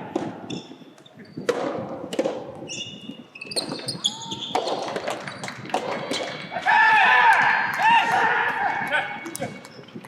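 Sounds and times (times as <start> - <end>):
rackets hitting ball: 0.1 - 0.5, 1.4 - 2.7, 3.6 - 6.7
ball bouncing: 1.4 - 2.7, 3.5 - 6.6.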